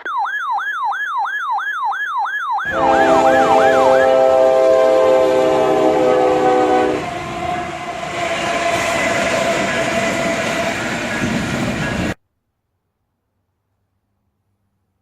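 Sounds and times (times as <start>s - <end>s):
horn chord: 2.7s - 7.1s.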